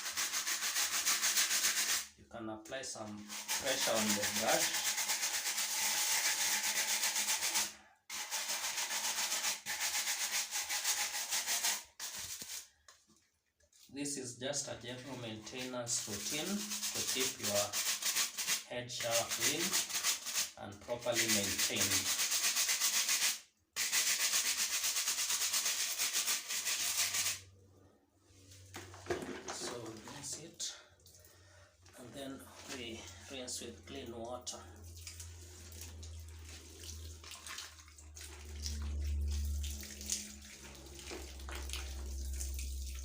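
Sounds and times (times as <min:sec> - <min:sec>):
brush scrubbing shower head: 0:03.1 - 0:12.7, 0:15.0 - 0:27.4.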